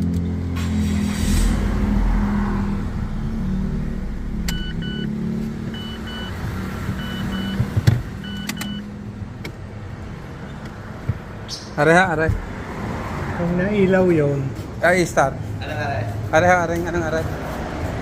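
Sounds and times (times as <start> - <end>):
steady low hum: 1.0 - 6.2
car warning chime double beeps: 3.8 - 8.9.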